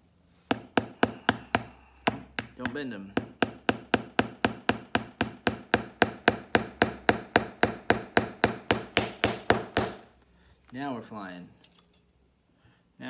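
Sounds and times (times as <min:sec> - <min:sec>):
hammer driving nails: 0:00.5 - 0:10.1.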